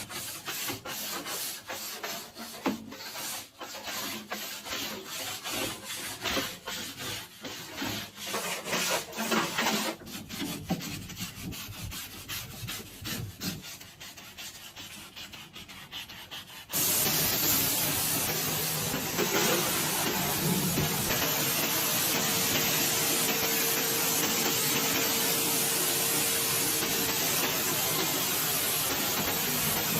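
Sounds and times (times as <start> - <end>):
brush scrubbing a surface: 0.0 - 29.9
hissing spray: 16.7 - 29.9.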